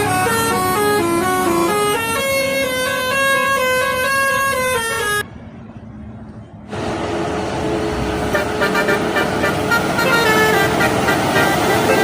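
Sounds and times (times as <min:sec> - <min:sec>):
bus horn playing a melody: 0:00.0 - 0:05.2, 0:08.2 - 0:12.0
faint steady horn tone: 0:00.0 - 0:05.3, 0:08.3 - 0:12.0
busy traffic noise: 0:00.0 - 0:12.0.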